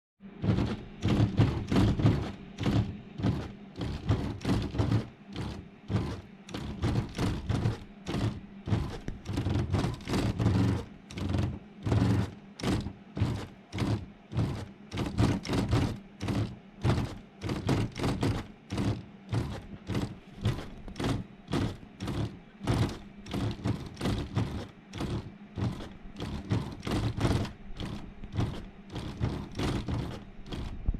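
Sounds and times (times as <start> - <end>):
printer low hum: 0.2 - 30.9
printer mechanical knocking: 0.3 - 30.9.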